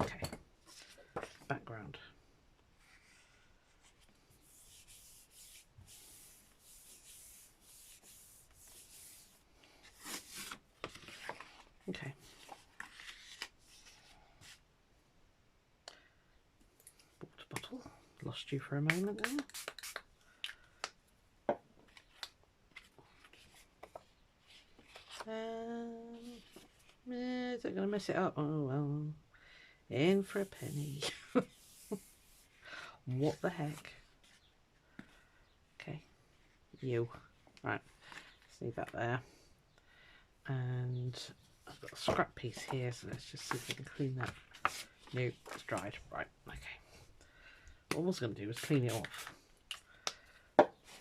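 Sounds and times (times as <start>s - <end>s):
rubbing strokes on a plate: 4.4s - 9.4s
woman humming: 25.2s - 27.8s.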